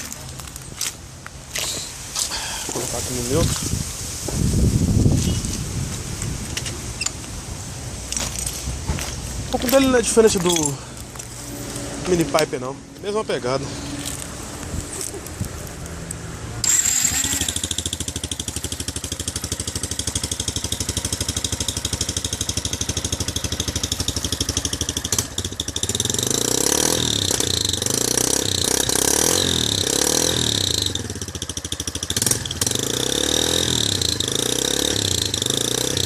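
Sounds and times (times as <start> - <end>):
motorcycle engine revving: 9.5 - 36.0
engine misfires: 16.6 - 36.0.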